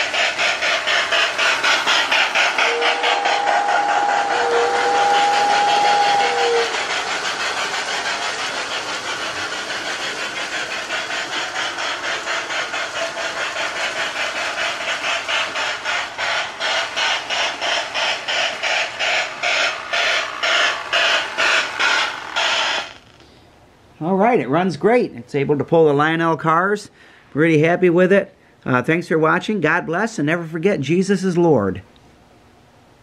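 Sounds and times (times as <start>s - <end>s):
electronic steam chuffing: 0.0s - 23.4s
two-note steam whistle: 2.5s - 7.6s.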